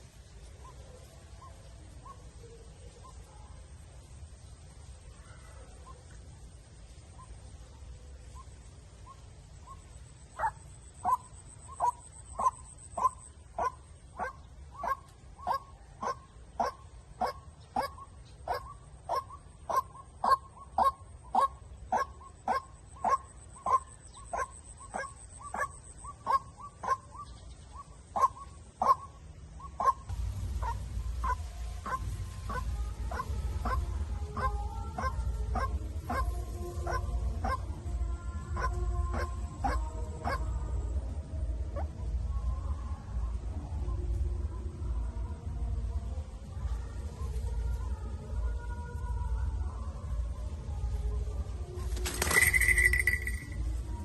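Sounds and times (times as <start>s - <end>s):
waterhen calling: 8.3s - 37.7s
low rumble: 30.0s - 52.0s.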